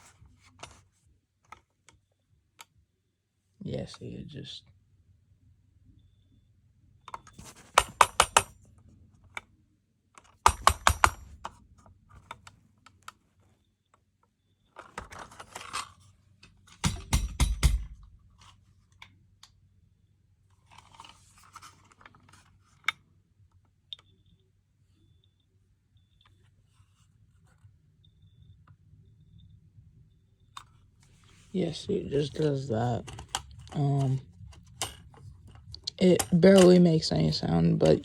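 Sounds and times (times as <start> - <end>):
faint high beep: 5.9 - 6.6, 23.9 - 26.4, 28.0 - 30.6
plastic clicks and rattles: 32.9 - 36.8.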